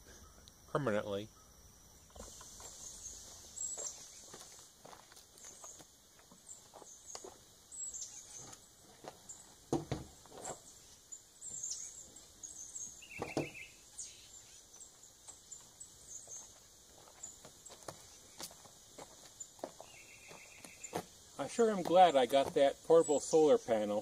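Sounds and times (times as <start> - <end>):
small birds chirping: 0.0 - 24.0
knocks or thumps: 9.7 - 10.1.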